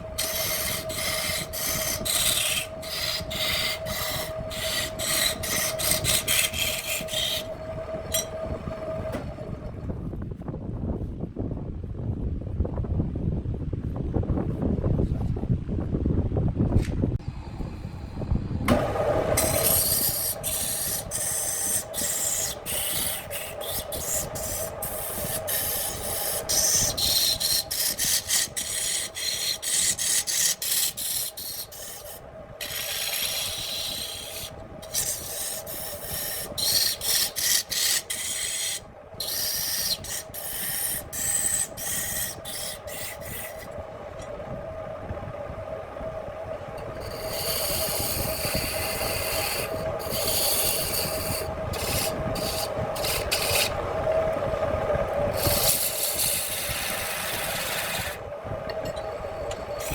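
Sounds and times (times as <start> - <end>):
wood lathe humming: 0.0 - 9.8, 17.3 - 44.9, 46.0 - 59.9
tool rasping against wood: 0.2 - 7.5, 19.4 - 43.7, 47.1 - 53.8, 55.3 - 58.2.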